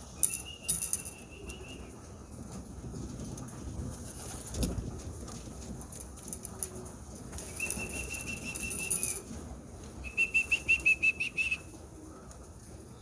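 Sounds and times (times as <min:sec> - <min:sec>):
person whistling: 0:07.5 - 0:09.2, 0:10.1 - 0:11.6.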